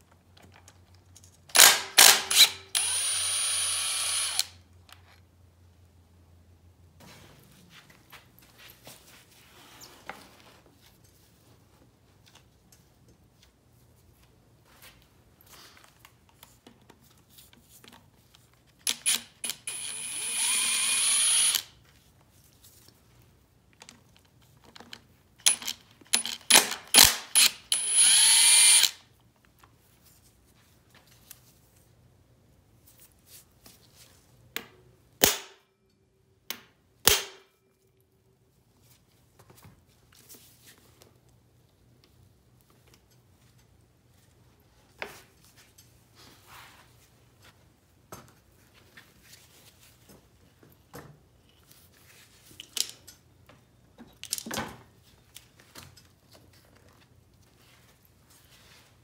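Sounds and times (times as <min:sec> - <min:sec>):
electric power tool whirring: 0:01.6 - 0:04.6, 0:18.9 - 0:21.7, 0:27.4 - 0:29.0.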